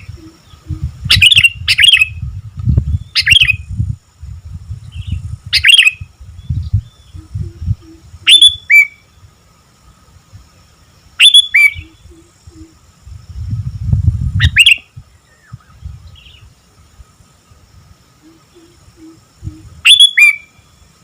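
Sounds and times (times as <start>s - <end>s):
bird singing bright phrases: 0.0s - 3.7s, 4.8s - 9.4s, 11.2s - 12.8s, 14.4s - 16.6s, 18.2s - 21.0s.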